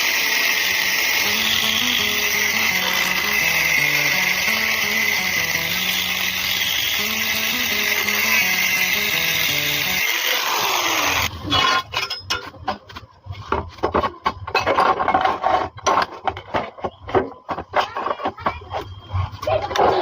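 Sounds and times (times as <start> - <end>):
metal cutting rasping and scraping: 0.0 - 12.3
background music: 1.2 - 10.1.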